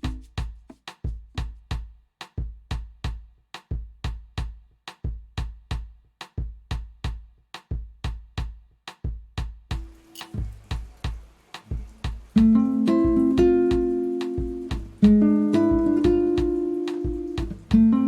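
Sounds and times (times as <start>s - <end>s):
deep kick drum thumps: 0.0s - 18.0s
crisp clicking percussion: 9.8s - 18.0s
latin lounge instrumental music: 9.8s - 18.0s.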